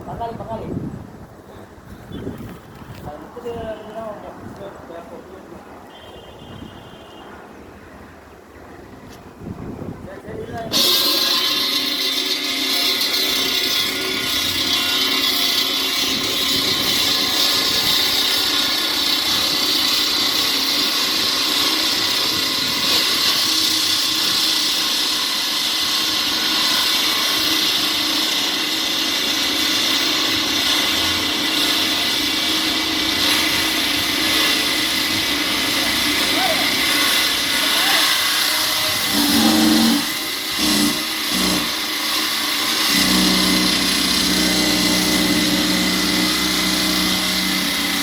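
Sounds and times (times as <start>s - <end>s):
power tool cutting concrete: 10.5s - 48.0s.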